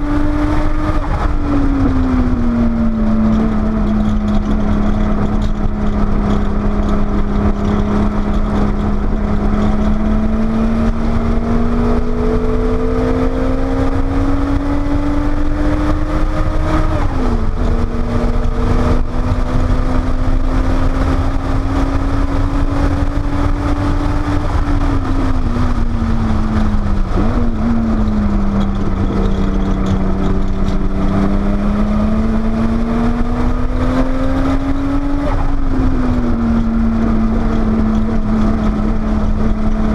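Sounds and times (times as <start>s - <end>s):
car engine revving: 0.0s - 39.9s
gear upshift: 0.0s - 39.9s
steady low rumble: 16.8s - 33.8s, 34.6s - 39.9s.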